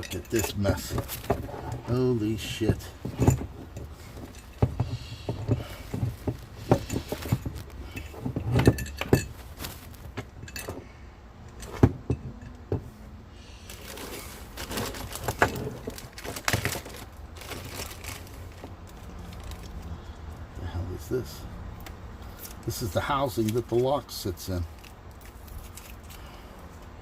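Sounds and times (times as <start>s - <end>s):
small metal parts clicking and clinking: 0.0s - 12.6s, 24.6s - 26.9s.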